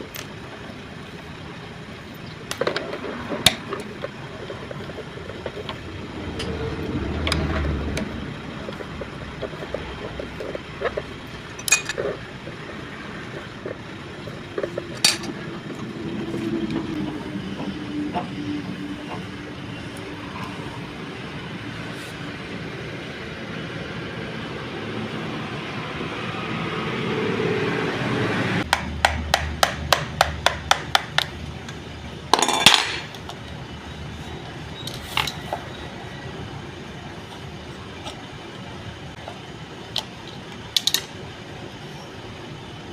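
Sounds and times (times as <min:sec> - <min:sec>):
low hum: 0:00.0 - 0:28.6
metal tools clicking and knocking: 0:11.6 - 0:12.2, 0:14.6 - 0:15.4, 0:32.3 - 0:33.3.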